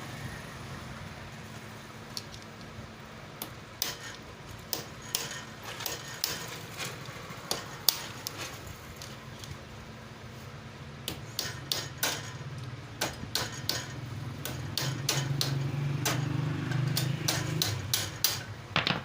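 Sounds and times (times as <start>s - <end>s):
tools knocking on metal: 16.8s - 19.0s.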